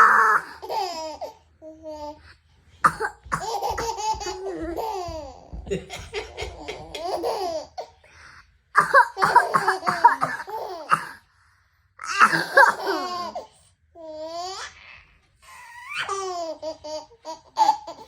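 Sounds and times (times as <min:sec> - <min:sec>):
baby giggling: 0:03.2 - 0:07.9, 0:08.8 - 0:10.9, 0:12.1 - 0:13.5.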